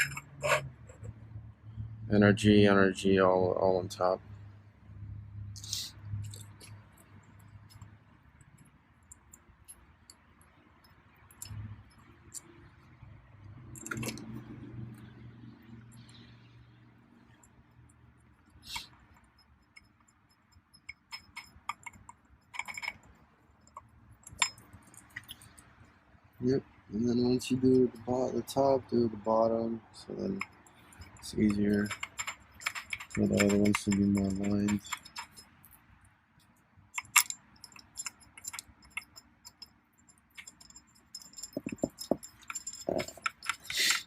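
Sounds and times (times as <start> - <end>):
metallic clicks of hand tools: 30.4 - 35.8, 36.4 - 44.0.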